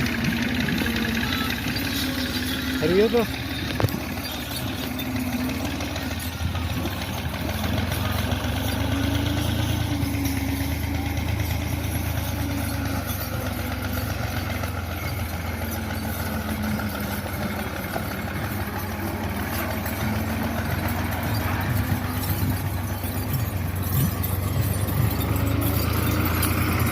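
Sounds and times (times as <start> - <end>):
vehicle engine idling: 0.0 - 26.9.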